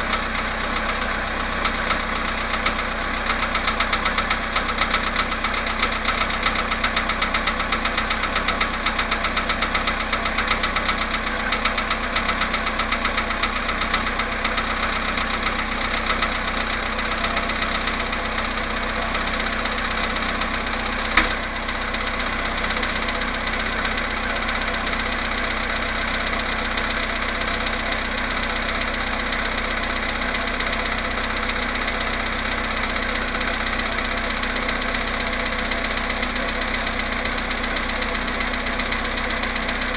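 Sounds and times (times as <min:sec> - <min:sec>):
car engine idling: 0:00.0 - 0:39.9
engine knocking: 0:00.0 - 0:39.9
sharp click: 0:21.2 - 0:21.4.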